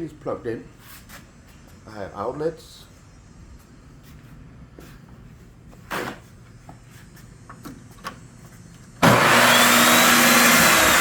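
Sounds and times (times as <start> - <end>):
power tool motor whining: 9.0 - 11.0.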